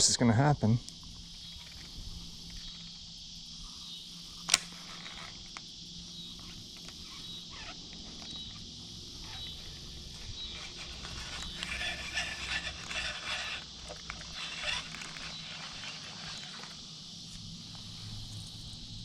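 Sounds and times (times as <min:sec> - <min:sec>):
insects chorus humming: 0:00.0 - 0:19.0
sharp click: 0:04.5 - 0:05.7.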